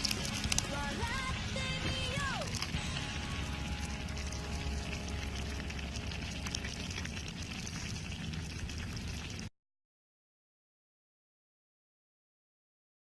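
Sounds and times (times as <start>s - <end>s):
fire crackling and popping: 0.0s - 9.5s.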